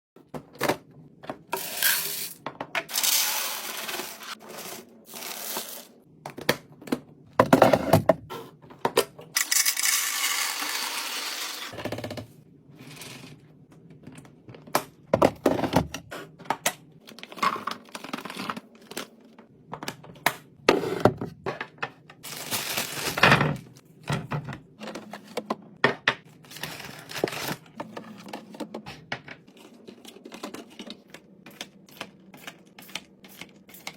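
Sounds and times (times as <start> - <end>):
plastic packaging rustling: 22.2 - 23.8.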